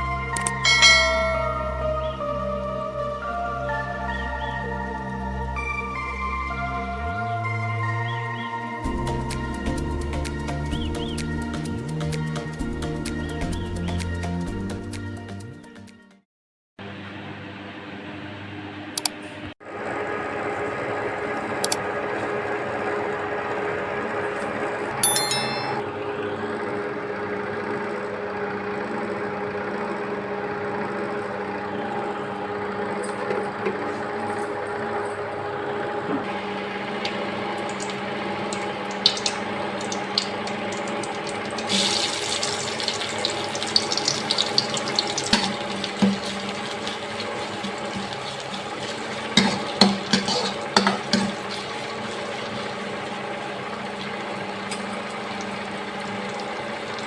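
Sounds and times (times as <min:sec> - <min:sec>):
sharp clinks and knocks: 0:25.0 - 0:25.8
water sloshing and pouring: 0:37.6 - 0:57.0.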